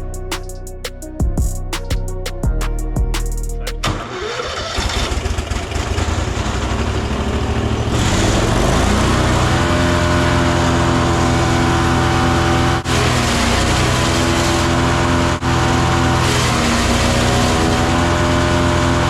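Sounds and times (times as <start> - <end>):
background music: 0.0 - 3.9
wood chipper engine revving up: 3.8 - 19.0.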